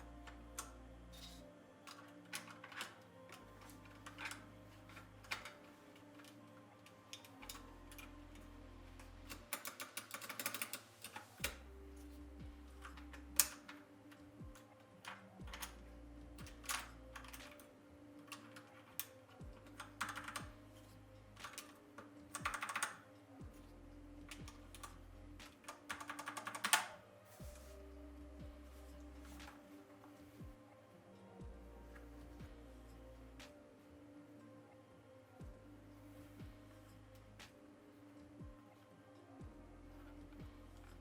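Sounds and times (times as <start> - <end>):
mechanical keyboard typing: 9.3 - 11.6, 16.4 - 20.6, 21.4 - 23.0, 24.3 - 27.0.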